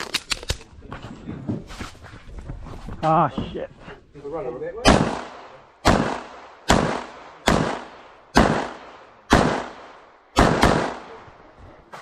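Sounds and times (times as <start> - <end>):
pistol shots with echo: 4.8 - 11.3.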